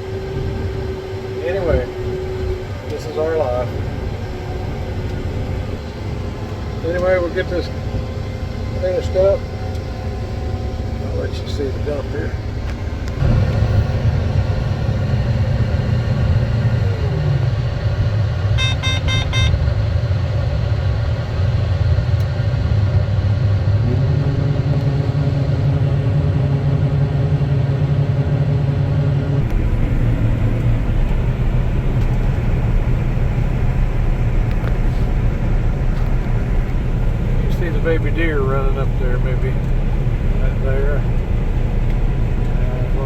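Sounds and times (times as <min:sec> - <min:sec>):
combine harvester running: 0:00.0 - 0:43.0
higher hum: 0:29.4 - 0:43.0.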